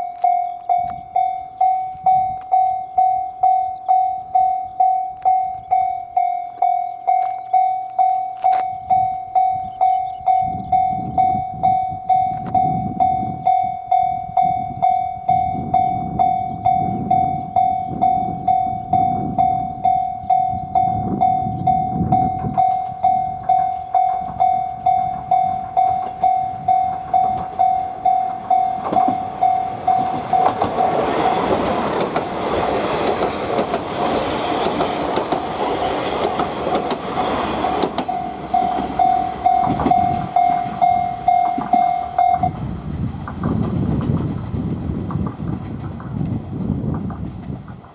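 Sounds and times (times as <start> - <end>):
level crossing electronic bell: 0.0 - 31.0, 38.1 - 42.6
train rumbling past: 0.0 - 47.9.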